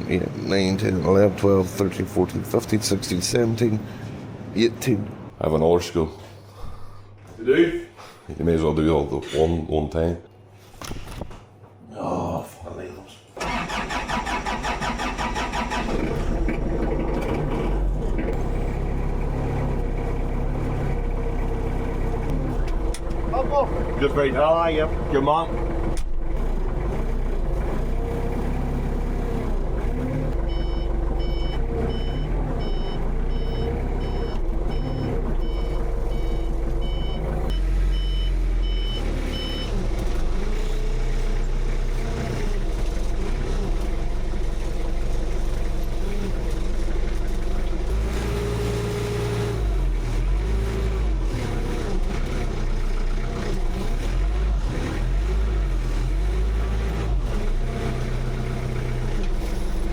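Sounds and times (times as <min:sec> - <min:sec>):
engine revving: 0:13.4 - 0:59.9
reversing alarm beeping: 0:30.5 - 0:39.7.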